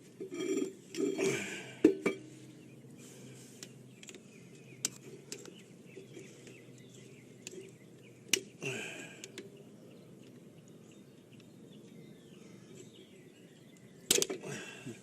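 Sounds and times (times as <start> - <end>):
metal scraping: 0.2 - 1.4.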